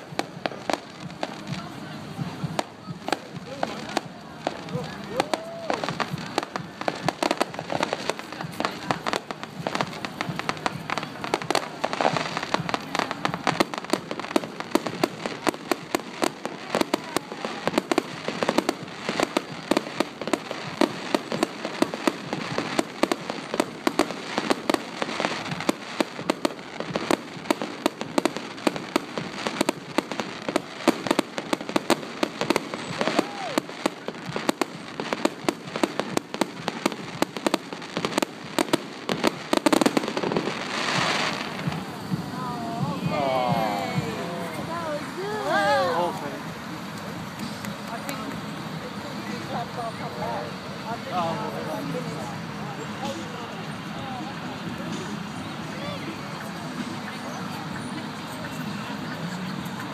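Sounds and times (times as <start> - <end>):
fireworks bangs and crackles: 0.0 - 59.9.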